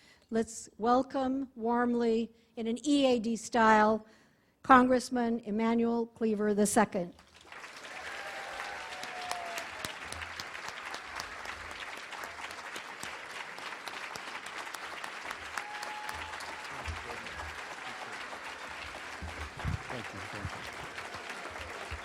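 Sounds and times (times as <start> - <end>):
audience applauding: 7.2 - 22.0.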